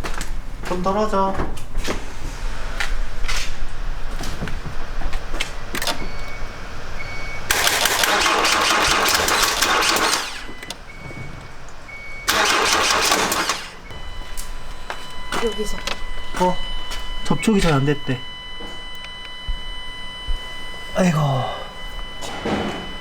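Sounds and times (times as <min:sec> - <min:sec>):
car starter motor cranking: 0:04.8 - 0:19.4.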